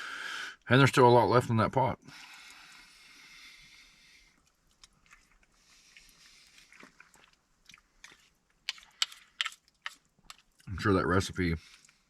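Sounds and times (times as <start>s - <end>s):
person chewing: 4.3s - 10.7s, 11.6s - 12.0s.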